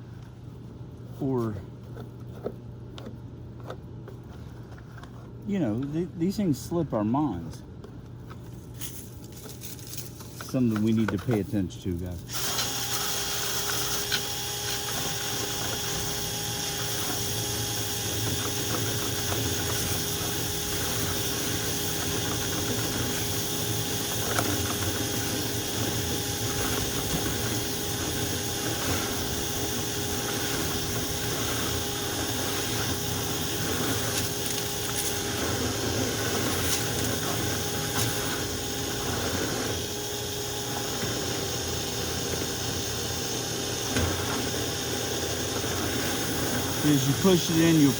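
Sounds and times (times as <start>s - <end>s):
dryer blower noise: 9.9s - 47.9s
drill motor whine: 12.3s - 47.9s.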